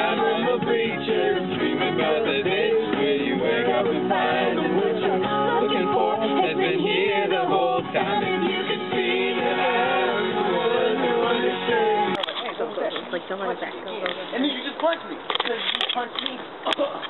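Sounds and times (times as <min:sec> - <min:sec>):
man singing: 0:00.0 - 0:12.2
musical accompaniment: 0:00.0 - 0:12.2.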